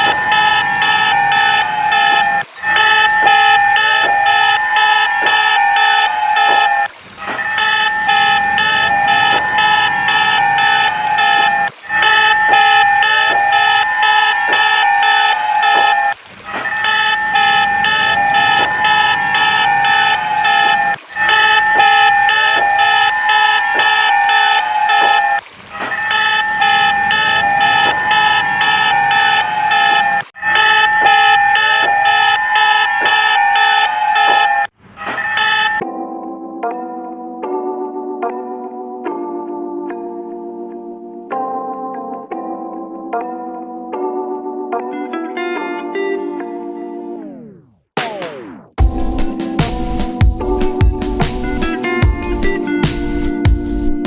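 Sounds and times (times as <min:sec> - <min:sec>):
beeping pulses: 0:00.0 - 0:35.8
emergency alert alarm tones: 0:00.0 - 0:35.9
soft synthesizer chords: 0:48.8 - 0:54.0.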